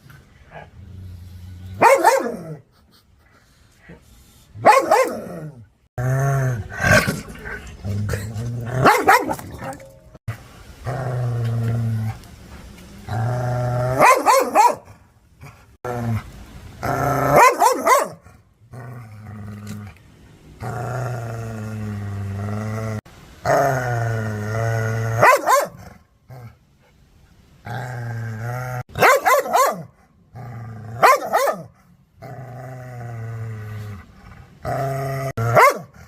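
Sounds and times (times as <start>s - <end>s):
dog barking sharply: 1.8s - 2.4s, 4.6s - 5.2s, 14.0s - 14.8s, 17.4s - 18.2s, 29.0s - 29.9s, 31.0s - 31.7s
dog growling: 5.1s - 9.9s, 20.6s - 25.4s, 27.6s - 28.9s.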